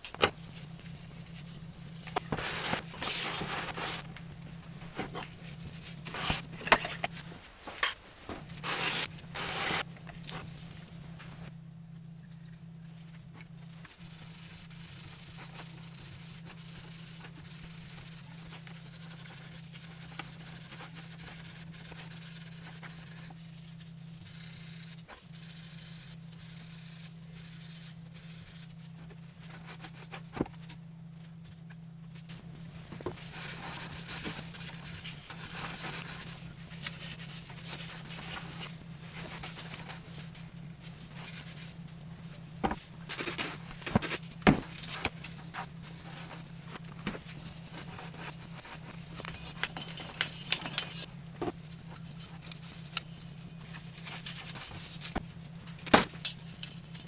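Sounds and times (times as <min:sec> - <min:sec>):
low hum: 0:00.0 - 0:07.6, 0:08.3 - 0:57.0
scrubbing metal parts: 0:08.5 - 0:09.9, 0:33.2 - 0:57.0.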